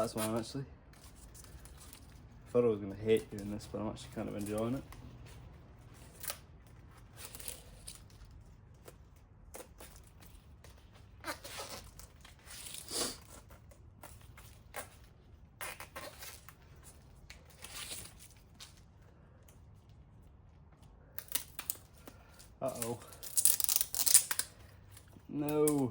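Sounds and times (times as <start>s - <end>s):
handlebar tape rustling and scraping: 0.0s - 25.9s
adhesive backing paper peeling: 21.1s - 25.9s.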